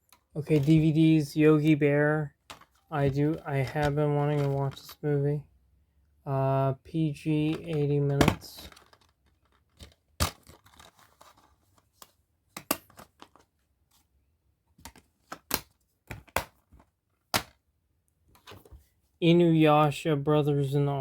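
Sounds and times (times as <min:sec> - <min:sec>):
plastic cases clicking and snapping: 0:07.4 - 0:13.5, 0:14.8 - 0:17.6.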